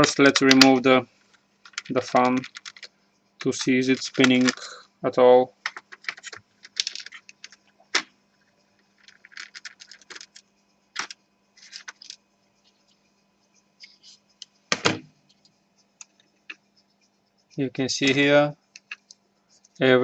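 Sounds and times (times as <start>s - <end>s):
faint steady hum: 0.0s - 20.0s
laptop parts clicking and scraping: 1.3s - 2.9s, 3.5s - 4.7s, 5.6s - 8.1s, 8.8s - 12.9s, 18.0s - 19.8s.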